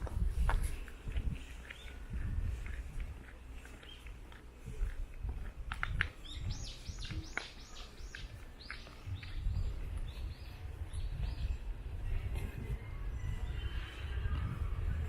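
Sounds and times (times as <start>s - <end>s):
footsteps on trail: 0.0s - 11.6s.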